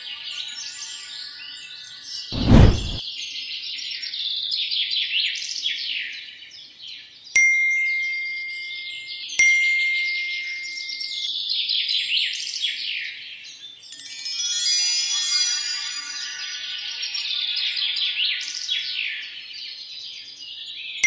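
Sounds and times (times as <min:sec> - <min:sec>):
short loud thud: 0:02.4 - 0:03.0.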